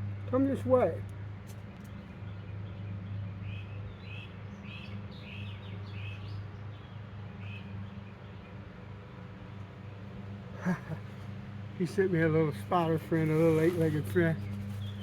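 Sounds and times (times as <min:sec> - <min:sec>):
bird chirping: 0:02.0 - 0:08.4, 0:14.4 - 0:15.0.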